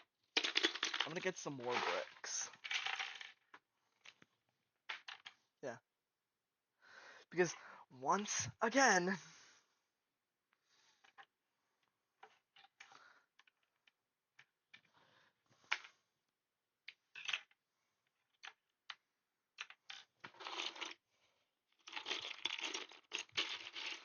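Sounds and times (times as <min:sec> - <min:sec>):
plastic bricks clicking and clattering: 0:00.4 - 0:04.3, 0:04.9 - 0:05.4, 0:12.2 - 0:15.0, 0:16.8 - 0:21.0, 0:21.7 - 0:24.0.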